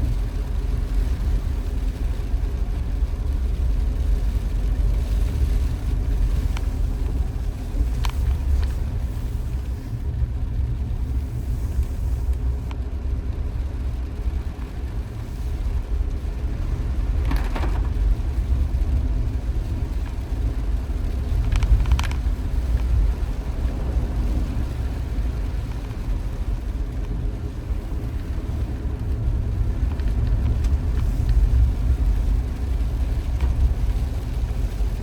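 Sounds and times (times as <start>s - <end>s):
car engine and road rumble: 0.0s - 35.0s
faint ticks: 7.9s - 8.8s.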